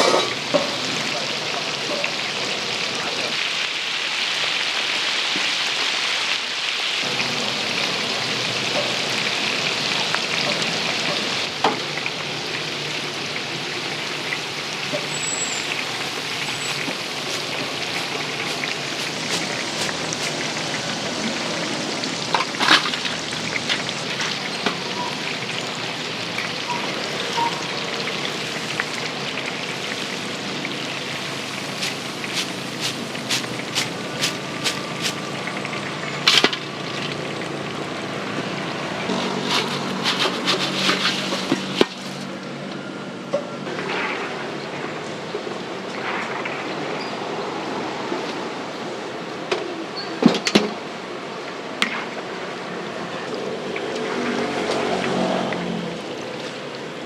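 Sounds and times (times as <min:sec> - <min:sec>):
hot oil sizzling: 0:00.0 - 0:42.6.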